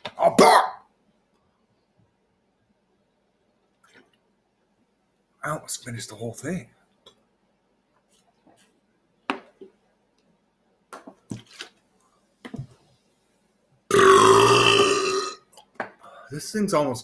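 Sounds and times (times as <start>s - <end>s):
soft clicks and squishes: 3.6s - 4.4s
man belching: 13.9s - 15.4s.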